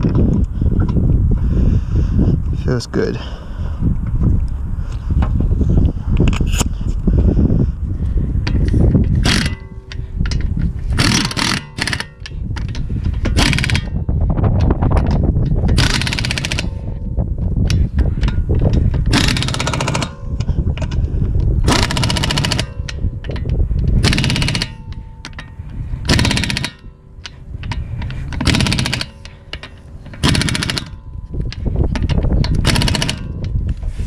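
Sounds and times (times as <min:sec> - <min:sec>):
impact wrench rattling: 0:08.4 - 0:34.0.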